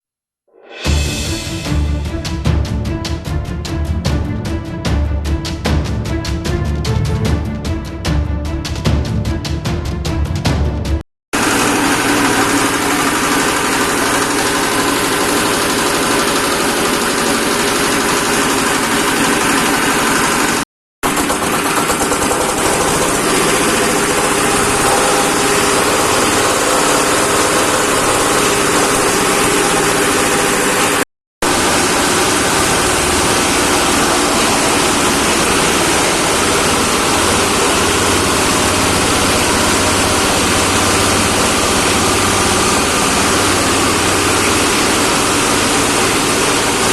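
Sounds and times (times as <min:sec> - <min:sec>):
engine-driven branch shredder running: 0:11.4 - 0:46.9.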